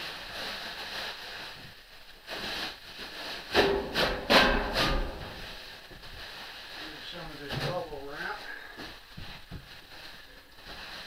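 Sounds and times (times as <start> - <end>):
rustling and scraping in crate: 0.0 - 11.0
loud knocks and scrapes: 3.5 - 5.7.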